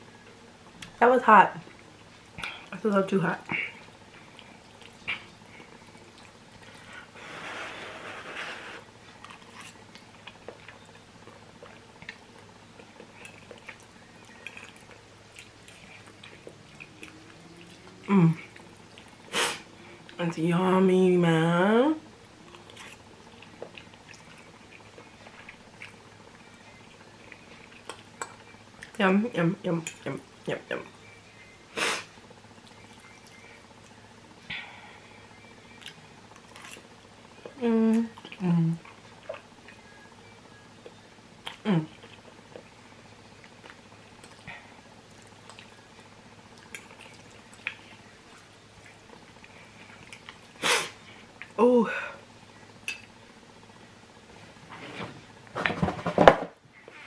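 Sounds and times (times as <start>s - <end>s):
wet chewing and mouth sounds: 3.7s - 7.2s, 8.0s - 20.2s, 22.2s - 29.0s, 31.8s - 34.1s, 35.2s - 40.0s, 40.8s - 51.6s
noodle sucking noise: 7.0s - 8.9s.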